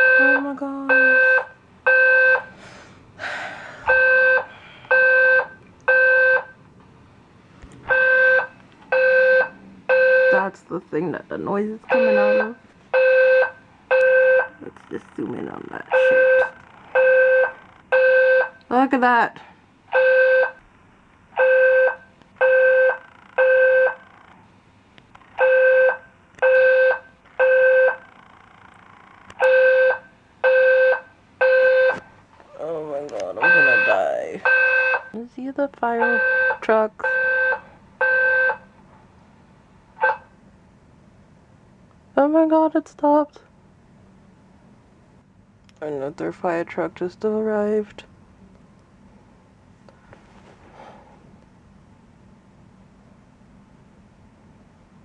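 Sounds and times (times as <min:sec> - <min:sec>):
fire alarm buzzy blasts: 0:00.0 - 0:02.6, 0:03.9 - 0:06.6, 0:07.9 - 0:10.6, 0:11.8 - 0:14.6, 0:15.9 - 0:19.0, 0:19.8 - 0:20.7, 0:21.3 - 0:24.2, 0:25.2 - 0:28.2, 0:29.3 - 0:32.2, 0:33.4 - 0:35.2, 0:35.8 - 0:38.8, 0:39.9 - 0:40.4.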